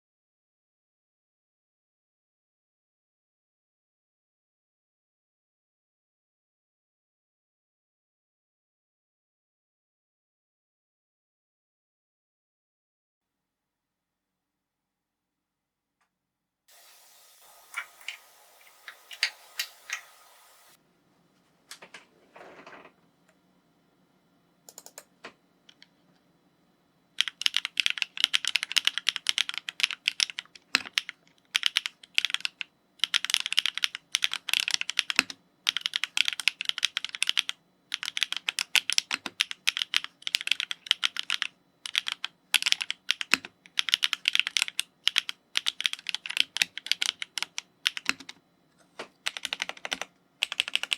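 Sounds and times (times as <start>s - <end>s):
mechanical keyboard typing: 24.7s - 25.9s, 27.2s - 48.4s, 49.0s - 50.9s.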